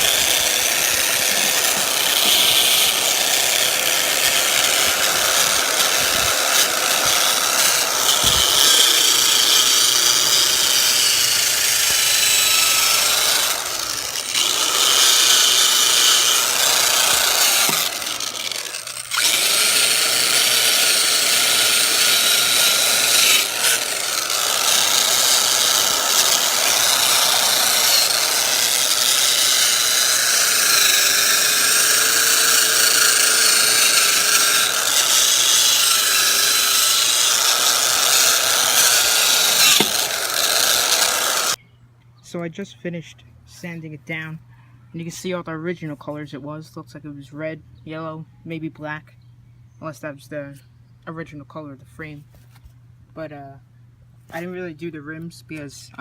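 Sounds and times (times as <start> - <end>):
electric sander on metal: 0.0 - 41.6.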